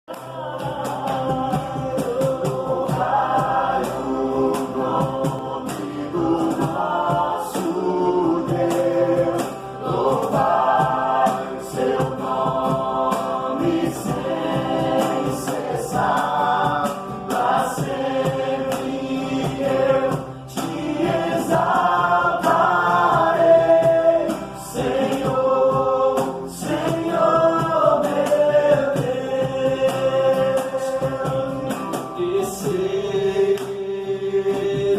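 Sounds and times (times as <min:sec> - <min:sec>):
group singing worship song: 0:00.1 - 0:34.9
musical accompaniment: 0:00.1 - 0:34.9.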